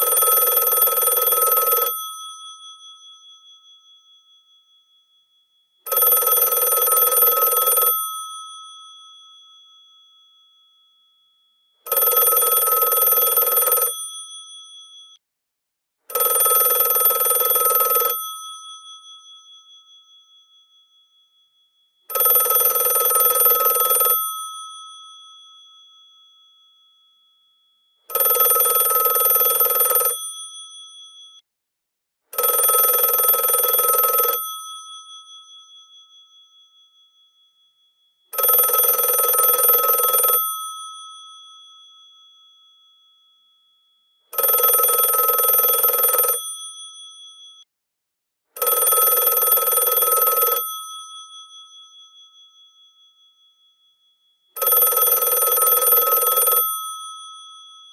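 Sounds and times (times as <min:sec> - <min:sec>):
rotary telephone bell ringing: 0:00.0 - 0:03.2, 0:05.9 - 0:09.0, 0:11.9 - 0:15.2, 0:16.2 - 0:19.6, 0:22.1 - 0:25.2, 0:28.1 - 0:31.4, 0:32.4 - 0:36.0, 0:38.3 - 0:41.6, 0:44.3 - 0:47.6, 0:48.6 - 0:52.1, 0:54.6 - 0:57.9.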